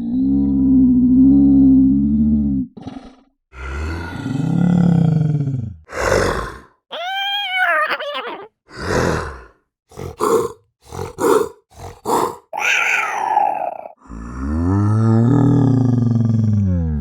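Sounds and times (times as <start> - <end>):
cat calling: 6.9 - 8.5, 12.6 - 13.9.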